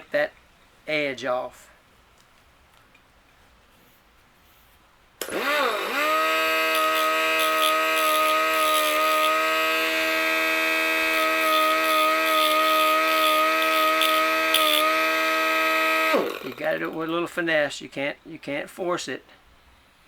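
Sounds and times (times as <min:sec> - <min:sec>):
die grinder whining: 0:05.2 - 0:17.2
grinding bit scratching metal: 0:05.3 - 0:17.2.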